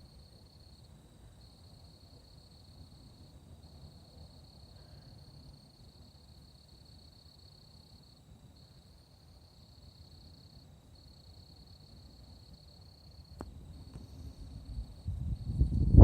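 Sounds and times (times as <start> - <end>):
insect chorus: 0.0 - 16.0.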